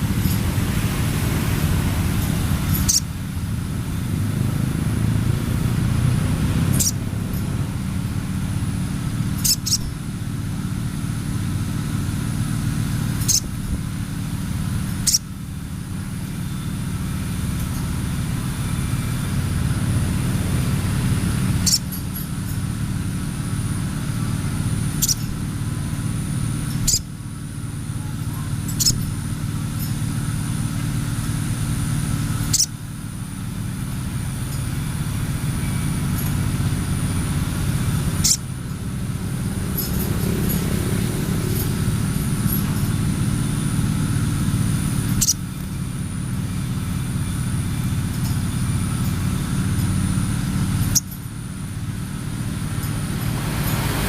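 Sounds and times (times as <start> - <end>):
bird high chirps: 2.7 - 3.1, 6.7 - 7.0, 9.3 - 10.0, 13.2 - 13.6, 15.0 - 15.3, 21.6 - 22.0, 25.0 - 25.4, 26.7 - 27.1, 28.0 - 29.2, 32.5 - 32.8, 38.2 - 38.5, 45.1 - 45.6.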